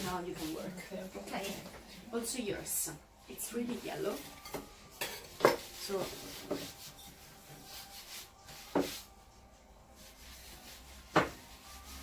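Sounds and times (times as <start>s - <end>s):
dough rubbing on board: 0.0s - 1.8s, 5.4s - 9.1s, 10.0s - 12.0s.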